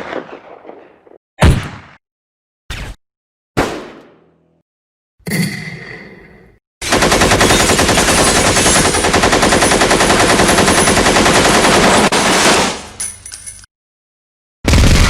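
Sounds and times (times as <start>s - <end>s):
automatic gunfire: 6.8s - 12.8s.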